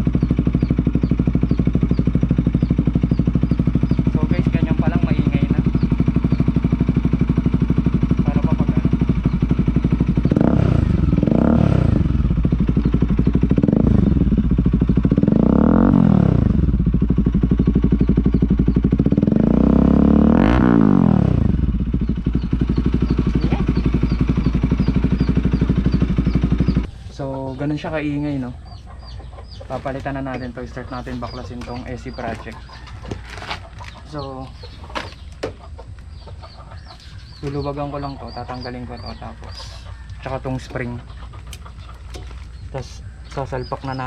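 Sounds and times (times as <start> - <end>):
motorcycle idling and revving: 0.0 - 44.0.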